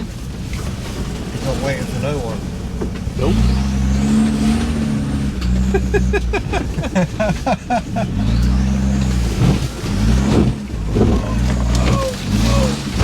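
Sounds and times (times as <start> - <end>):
car engine revving hard: 0.0 - 13.0.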